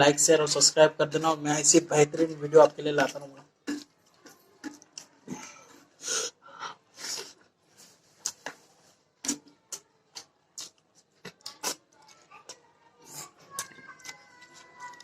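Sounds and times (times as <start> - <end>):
mouth clicks: 3.1 - 6.4, 9.2 - 14.4
breathy hisses through nose: 6.0 - 7.4
wet chewing and lip smacks: 8.2 - 8.6, 9.2 - 15.0.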